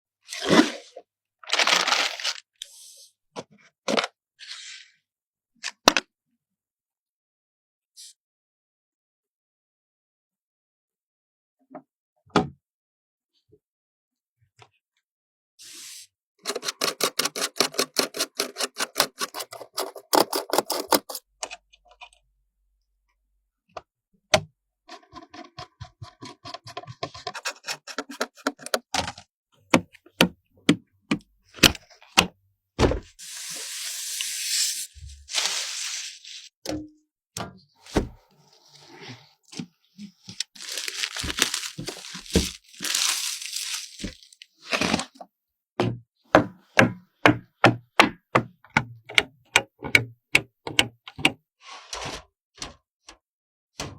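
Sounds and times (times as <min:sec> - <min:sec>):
rustling and scraping: 0:33.2 - 0:36.5, 0:37.8 - 0:45.2.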